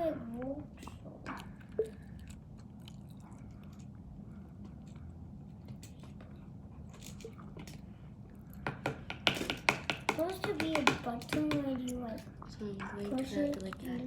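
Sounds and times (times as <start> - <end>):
low background hum: 0.0 - 14.0
handling clicks and crunches: 11.1 - 14.0.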